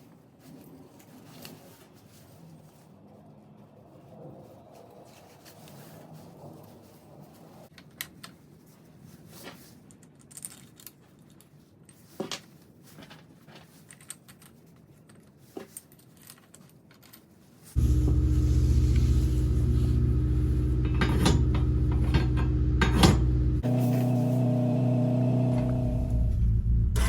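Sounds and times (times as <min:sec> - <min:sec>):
light clicks and metallic clatter: 0:09.4 - 0:17.4.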